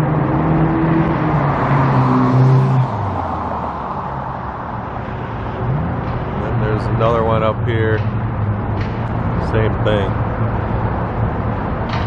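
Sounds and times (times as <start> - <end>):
vehicle passing by: 0.0 - 11.9.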